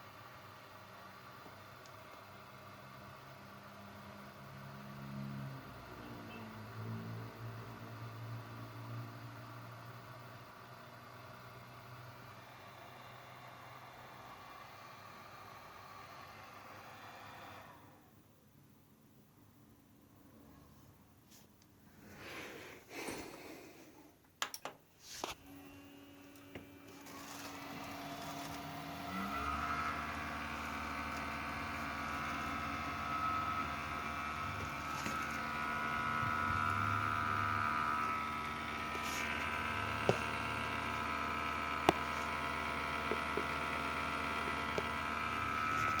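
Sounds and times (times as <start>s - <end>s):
power supply hum with whine: 25.3s - 46.0s.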